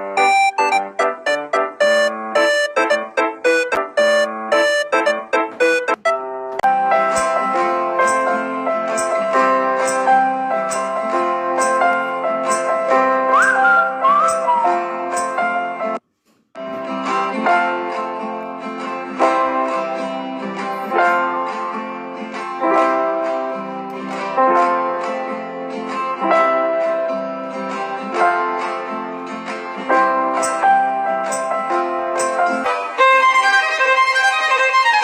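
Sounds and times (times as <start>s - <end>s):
plucked string melody: 0.0s - 15.6s, 31.3s - 35.0s.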